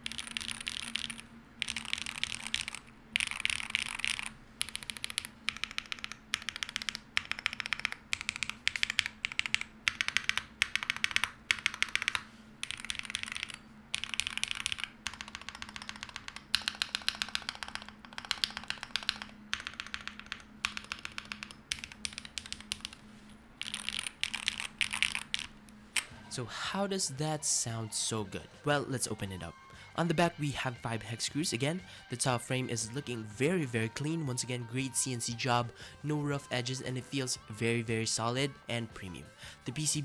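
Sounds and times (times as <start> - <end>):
keyboard typing: 0.0 - 26.1.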